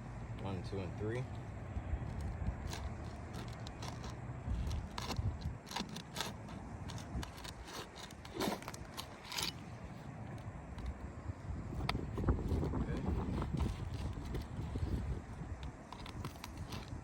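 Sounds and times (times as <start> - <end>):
tool scraping under shingles: 2.0 - 11.0, 11.7 - 17.0
shingle seals clicking and crackling: 2.1 - 11.0.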